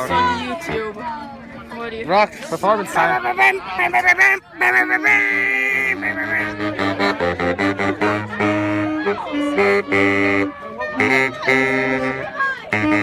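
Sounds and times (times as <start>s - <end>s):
solo saxophone melody: 4.6s - 13.0s.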